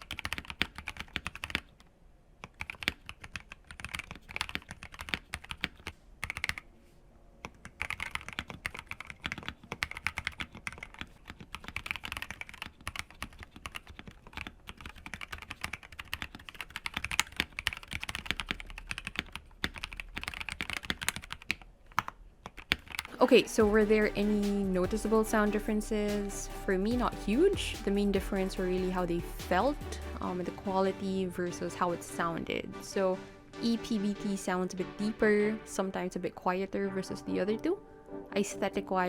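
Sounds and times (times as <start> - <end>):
typing on mechanical keyboard: 0.0 - 6.6, 7.4 - 23.2.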